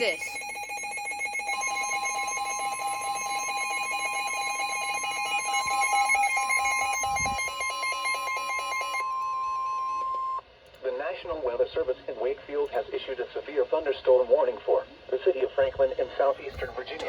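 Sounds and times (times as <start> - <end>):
rapidly pulsing electronic alert: 0.0 - 10.4
steady warning alarm tone: 0.0 - 10.4.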